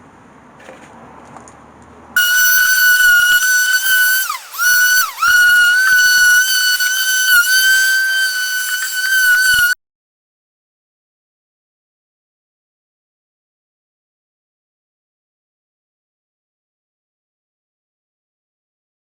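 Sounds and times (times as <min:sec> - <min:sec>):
power tool motor whine: 0:02.2 - 0:09.8.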